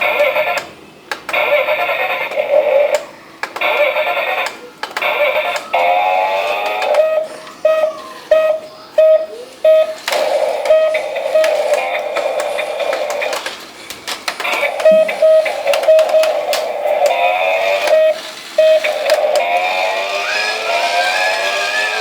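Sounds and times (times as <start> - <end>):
electronic music synthesized tones: 14.4 - 22.0.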